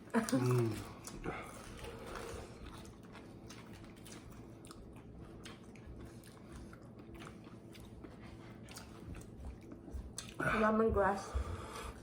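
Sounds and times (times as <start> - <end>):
chewing and crunching food: 0.0 - 12.0.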